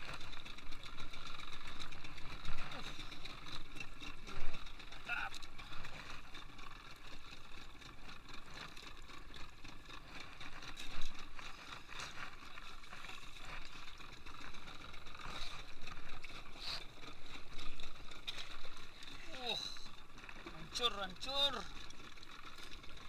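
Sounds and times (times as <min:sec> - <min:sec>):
steady wash of boat noise: 0:00.0 - 0:23.0.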